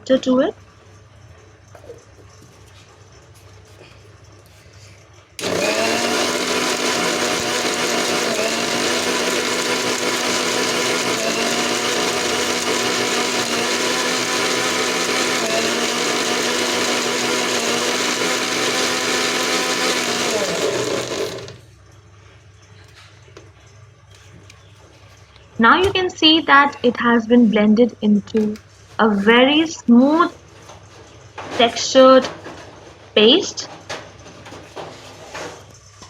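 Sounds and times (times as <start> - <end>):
electric blender grinding: 5.4 - 21.7.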